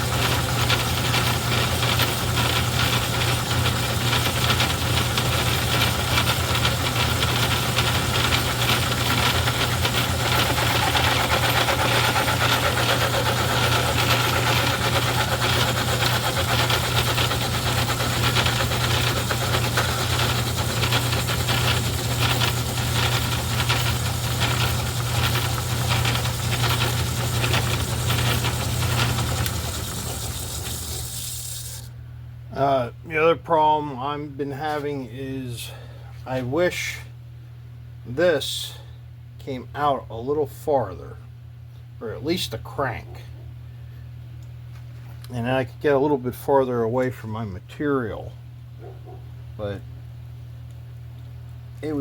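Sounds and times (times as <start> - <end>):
lathe cutting and gear noise: 0.0 - 31.9
metal lathe motor hum: 0.0 - 32.0.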